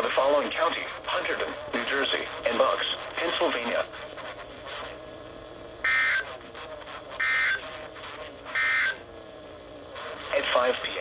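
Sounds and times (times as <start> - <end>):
digital data tone bursts: 5.8 - 6.4, 7.2 - 7.7, 8.5 - 9.0.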